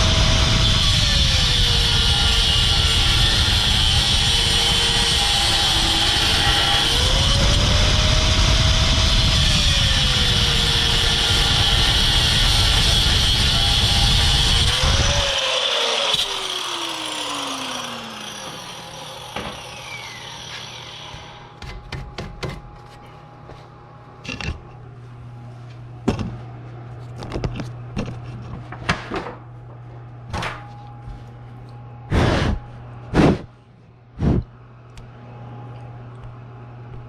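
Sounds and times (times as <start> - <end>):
machine whine winding down: 0.0 - 21.6
loud running machine noise: 0.0 - 23.2, 32.0 - 33.5
steady low hum: 19.9 - 37.0.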